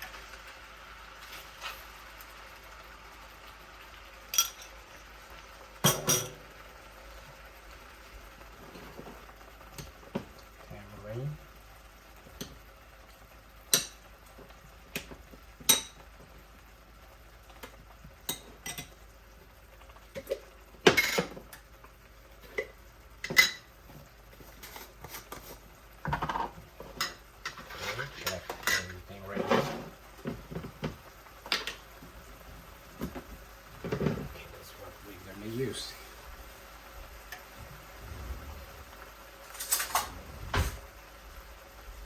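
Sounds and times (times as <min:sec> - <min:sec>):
utensil scraping a cooking pan: 0:01.1 - 0:02.1, 0:22.3 - 0:30.9, 0:37.4 - 0:41.1.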